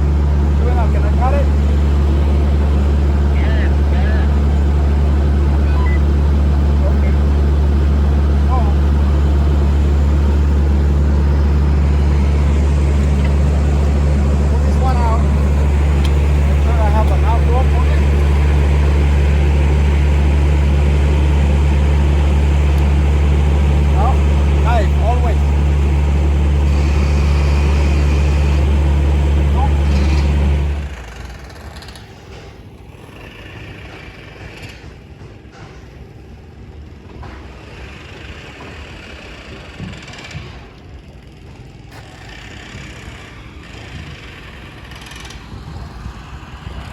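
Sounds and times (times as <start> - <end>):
air compressor engine running: 0.0 - 46.9.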